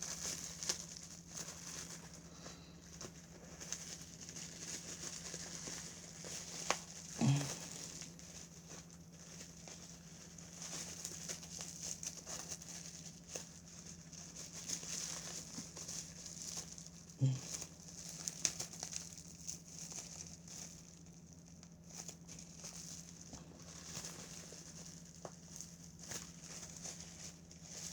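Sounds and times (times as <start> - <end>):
package wrapping crinkling: 0.0 - 27.9
steady low hum: 0.0 - 27.9.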